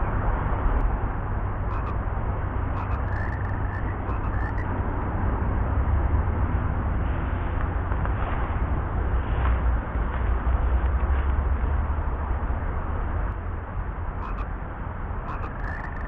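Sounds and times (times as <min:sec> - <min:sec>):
wind rumble: 0:00.0 - 0:16.0
frogs croaking: 0:01.6 - 0:02.0, 0:02.6 - 0:04.7, 0:14.2 - 0:14.5, 0:15.2 - 0:16.0.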